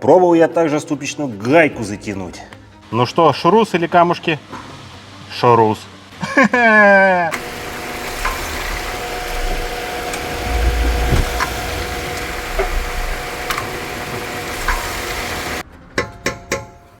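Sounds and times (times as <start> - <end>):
car engine rumble: 7.4 - 15.6.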